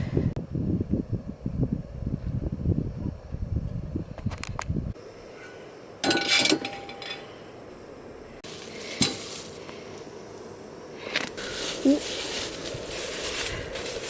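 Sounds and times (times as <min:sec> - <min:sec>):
steady hiss: 0:04.9 - 0:14.0
metal cookware clinking: 0:06.0 - 0:07.3.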